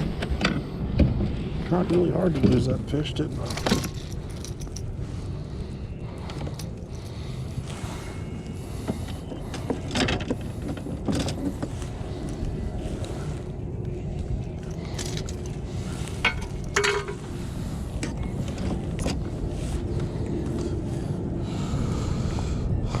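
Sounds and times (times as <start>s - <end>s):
wind rumbling on microphone: 0.0s - 23.0s.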